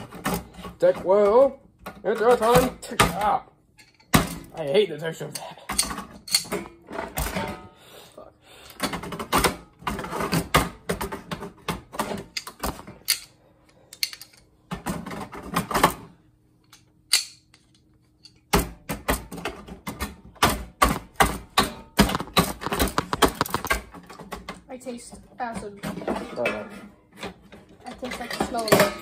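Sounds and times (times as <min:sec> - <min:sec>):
hand tools clicking on plastic: 0:22.0 - 0:24.5.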